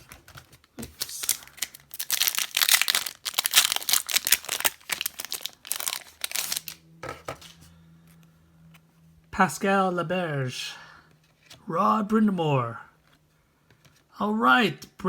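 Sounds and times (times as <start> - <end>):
plastic wrapper crinkling: 0.8 - 6.8.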